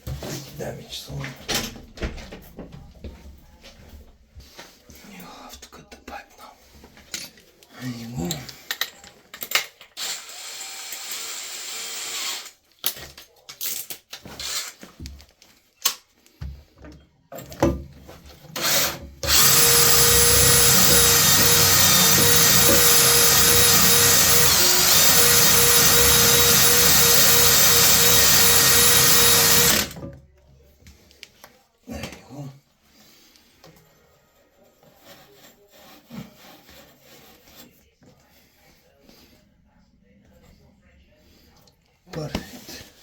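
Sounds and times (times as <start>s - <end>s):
power tool cutting pipe: 10.0s - 12.6s, 18.6s - 30.0s.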